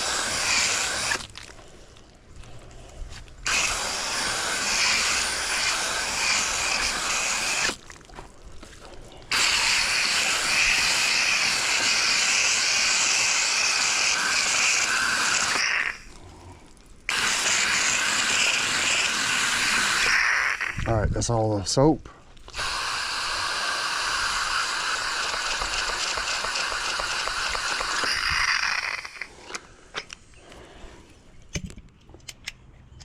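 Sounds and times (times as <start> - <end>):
hose sprayer hissing spray: 0.0 - 1.3, 3.5 - 7.8, 9.3 - 16.1, 17.1 - 20.8, 22.5 - 29.4.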